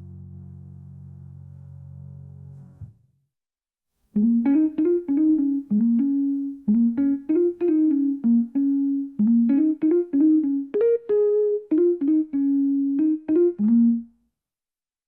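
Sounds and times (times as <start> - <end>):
keyboard melody: 4.2 - 14.2.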